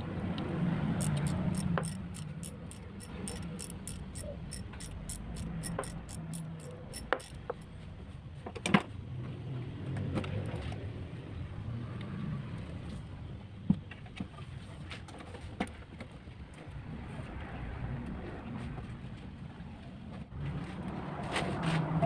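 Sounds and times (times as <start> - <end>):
hand tools clicking on metal: 1.0 - 7.7.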